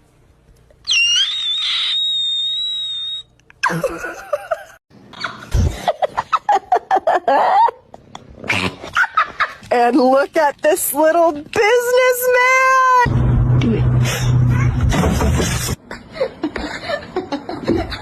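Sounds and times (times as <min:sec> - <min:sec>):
high-pitched scream: 0:00.8 - 0:03.3
person laughing: 0:03.6 - 0:08.0.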